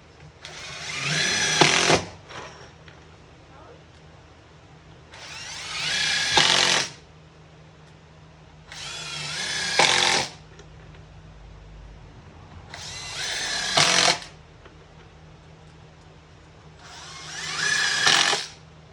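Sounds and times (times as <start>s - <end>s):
power drill driving screws: 0.4s - 2.2s, 5.1s - 7.0s, 8.7s - 10.4s, 12.7s - 14.4s, 16.8s - 18.6s.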